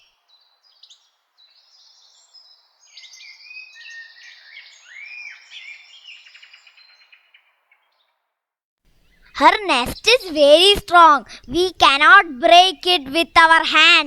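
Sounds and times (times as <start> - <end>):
birds chirping: 8.9 - 14.0
faint background hiss: 8.9 - 14.0.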